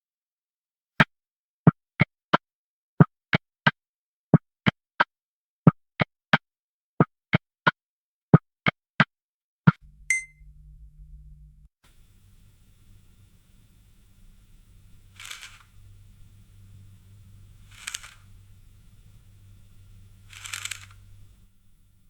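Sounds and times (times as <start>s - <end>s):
short ringing tone: 9.8s - 11.7s.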